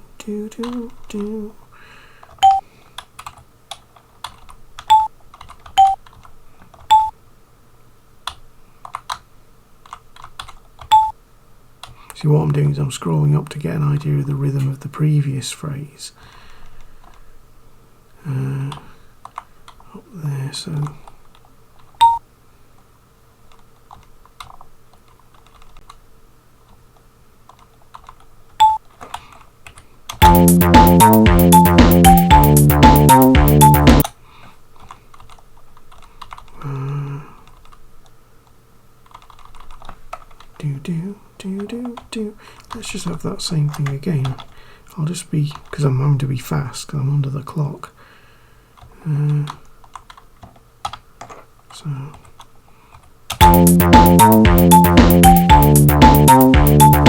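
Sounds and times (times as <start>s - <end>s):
computer keyboard keys clicking: 2.2s - 7.1s, 8.2s - 9.2s, 9.8s - 11.1s, 23.5s - 26.0s, 27.5s - 30.3s, 34.8s - 36.6s, 37.4s - 37.8s, 39.0s - 40.6s, 49.6s - 51.4s
short bright synth lead notes: 30.2s - 34.0s, 53.4s - 57.0s
tracker music with drums: 30.2s - 34.0s, 53.4s - 57.0s.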